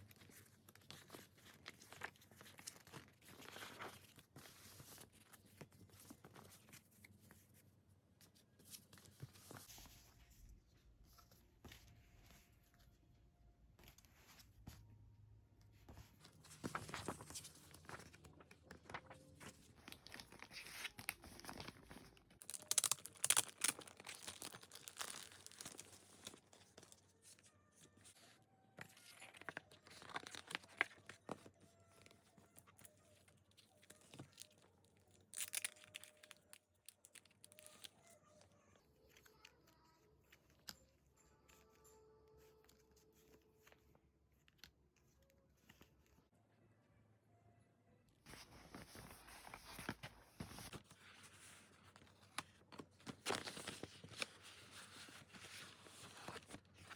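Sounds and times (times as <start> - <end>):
wrapping crinkling and tearing: 16.5 - 28.0, 28.8 - 38.3.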